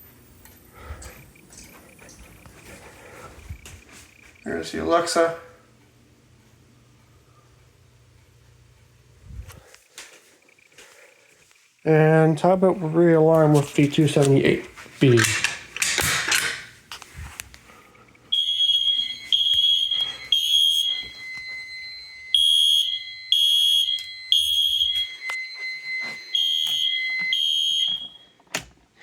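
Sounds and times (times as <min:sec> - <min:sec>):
fire alarm horn blasts: 0:18.3 - 0:28.4.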